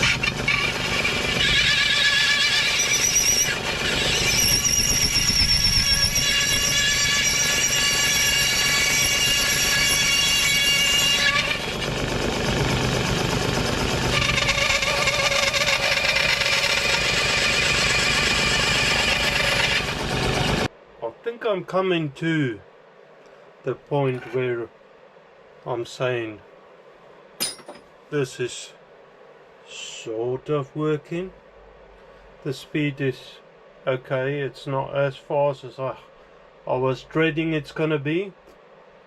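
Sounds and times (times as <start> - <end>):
bandsaw blade squealing: 0.0 - 11.8, 14.1 - 20.0
bandsaw motor running: 0.0 - 20.7.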